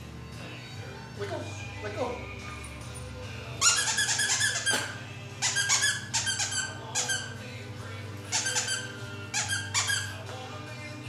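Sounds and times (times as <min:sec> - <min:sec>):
squeaky dog toy squeaking: 0:03.6 - 0:07.4, 0:08.3 - 0:10.2.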